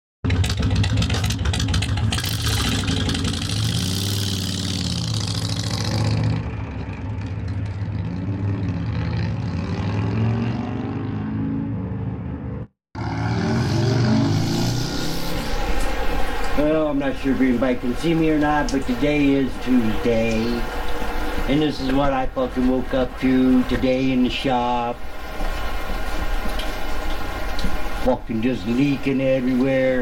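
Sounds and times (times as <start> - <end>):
motorcycle engine revving: 0.2 - 21.8.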